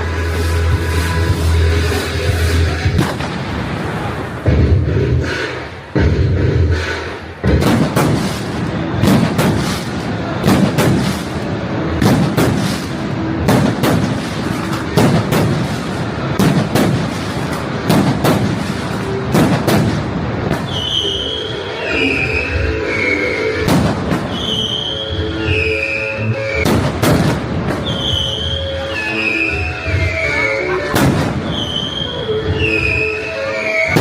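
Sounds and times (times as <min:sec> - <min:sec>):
music playing: 0:00.0 - 0:34.0
fireworks banging: 0:00.2 - 0:22.0, 0:23.6 - 0:29.0, 0:30.8 - 0:33.1.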